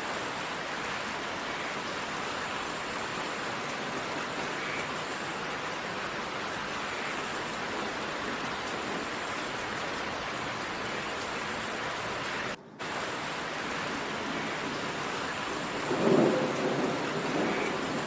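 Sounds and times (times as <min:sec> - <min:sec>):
heavy rain downpour: 0:00.0 - 0:18.0
low rumble of thunder: 0:11.4 - 0:18.0.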